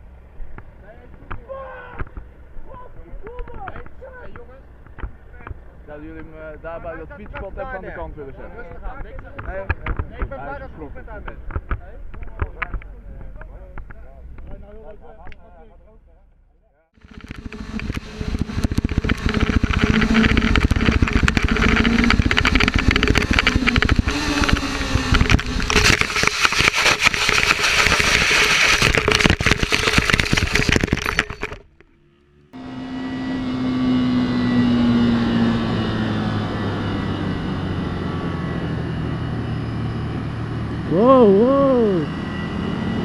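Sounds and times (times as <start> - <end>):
motorcycle engine running: 17.0 - 43.0
wind buffeting: 17.1 - 31.5.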